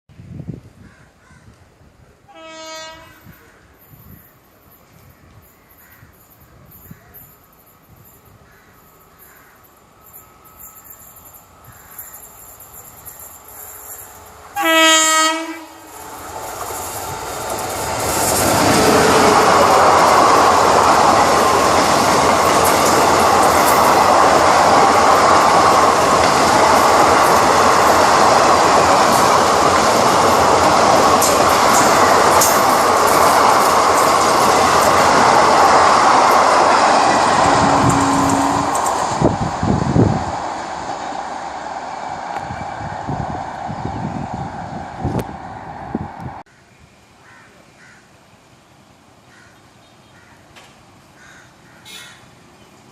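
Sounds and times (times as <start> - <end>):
train horn: 2.3 - 3.4, 14.5 - 16.0, 37.4 - 39.0
train wheels rushing on rails: 3.2 - 46.5.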